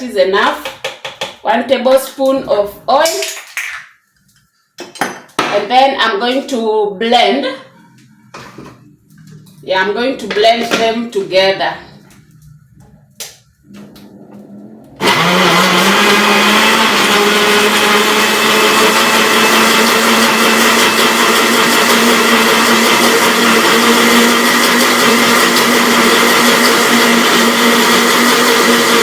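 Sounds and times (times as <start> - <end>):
blender motor running: 15.0 - 29.0.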